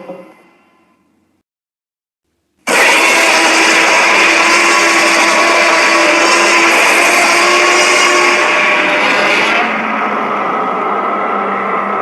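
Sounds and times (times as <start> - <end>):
loud harsh monster roar: 2.7 - 12.0.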